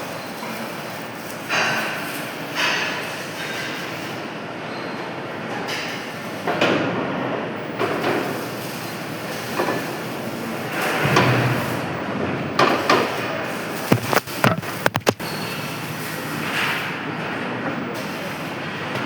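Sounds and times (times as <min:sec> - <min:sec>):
metal knocks and clanks: 0:13.9 - 0:15.2.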